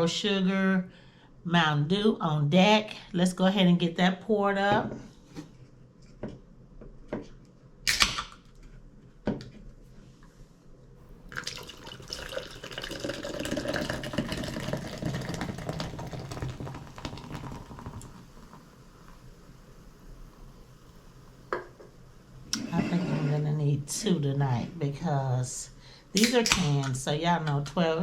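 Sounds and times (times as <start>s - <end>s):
soda pouring and fizzing: 11.2s - 21.5s.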